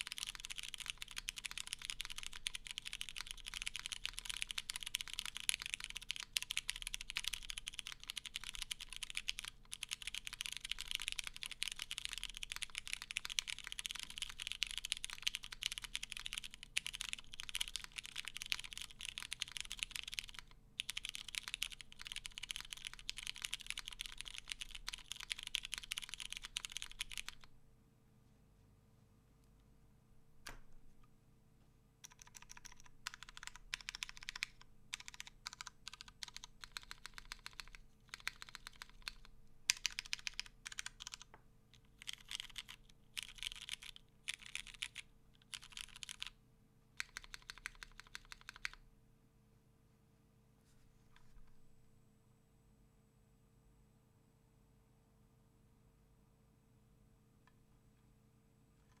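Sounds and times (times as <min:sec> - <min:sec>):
fast typing on mechanical keyboard: 0:00.0 - 0:27.5, 0:32.0 - 0:46.4, 0:47.0 - 0:48.8.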